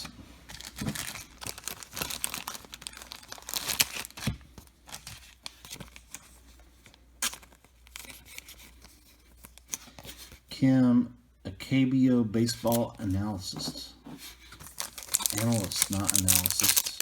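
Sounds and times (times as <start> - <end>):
foil wrapper crinkling and tearing: 0.5 - 6.2, 7.2 - 9.8, 14.6 - 17.0.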